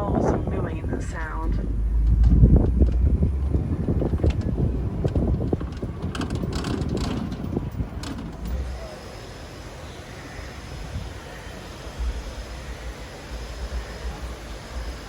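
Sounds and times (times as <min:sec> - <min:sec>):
truck engine and road rumble: 0:00.0 - 0:15.0
knocks and rattles: 0:01.5 - 0:08.6.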